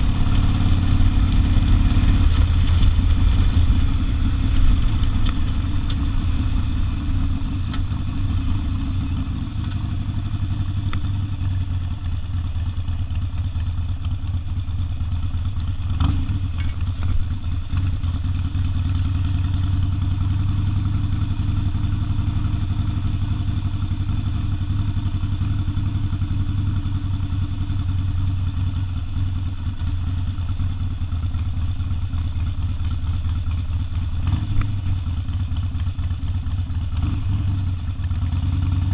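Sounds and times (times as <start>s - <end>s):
motorcycle engine rumbling: 0.0s - 38.9s.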